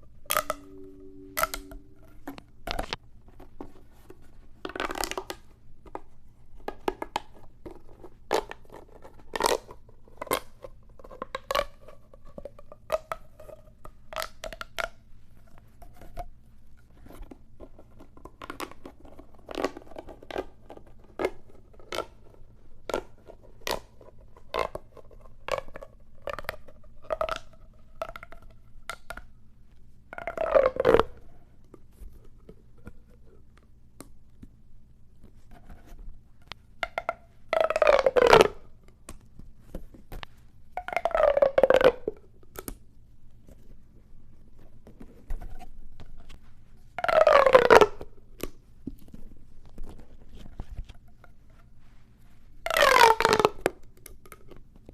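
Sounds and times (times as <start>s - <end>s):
plastic pop tube clicks: 0.3s - 3.0s, 14.1s - 15.0s, 52.6s - 54.6s
corrugated tube ratcheting zips: 52.7s - 53.5s.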